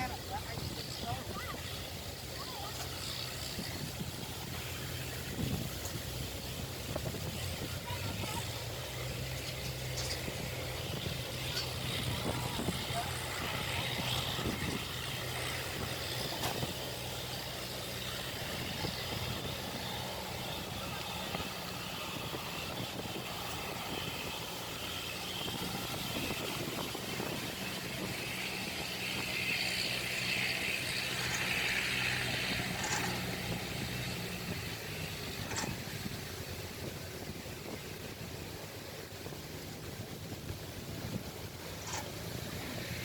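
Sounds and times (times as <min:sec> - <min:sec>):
combine harvester engine running: 0:00.0 - 0:43.0.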